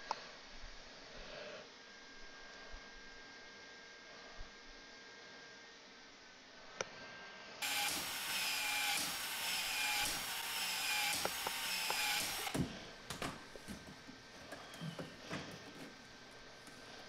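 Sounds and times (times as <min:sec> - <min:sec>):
small power tool running: 0:07.6 - 0:12.8.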